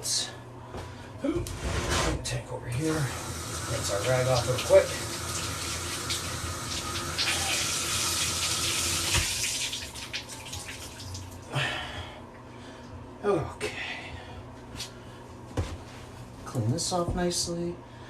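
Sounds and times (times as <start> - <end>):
water running from faucet: 2.9 - 11.5.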